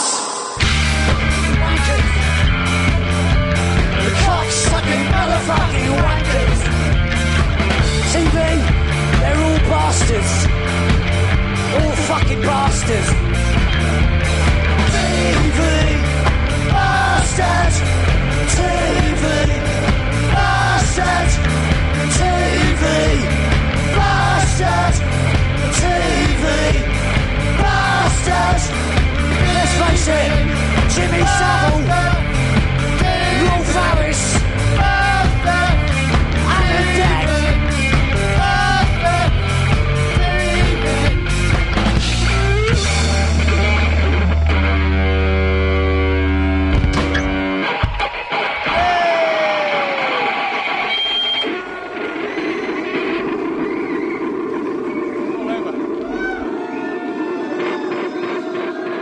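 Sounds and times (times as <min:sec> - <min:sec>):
punk rock band playing live: 0:00.0 - 0:59.0
steady drum beat: 0:00.6 - 0:44.2
person singing: 0:03.9 - 0:06.8, 0:14.8 - 0:41.3.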